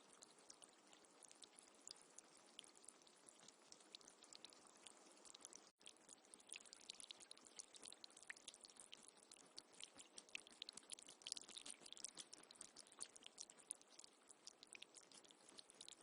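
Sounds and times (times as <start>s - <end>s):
water trickling and dripping: 0.0s - 16.0s.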